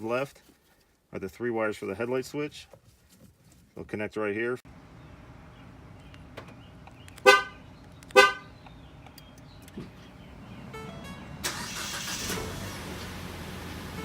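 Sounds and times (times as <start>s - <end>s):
car horn chirps: 7.2s - 8.6s, 10.7s - 11.7s.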